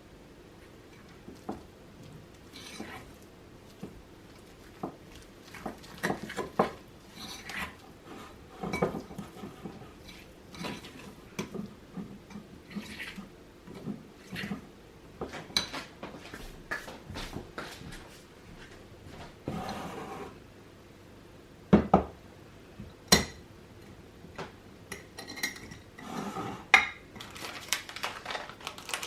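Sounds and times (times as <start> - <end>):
fork scraping against bowl: 7.1 - 8.8.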